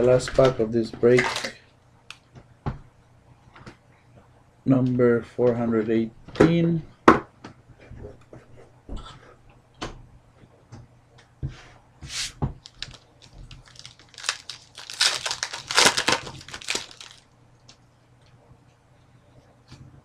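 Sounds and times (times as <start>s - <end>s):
plastic wrapper crinkling: 12.6s - 17.3s.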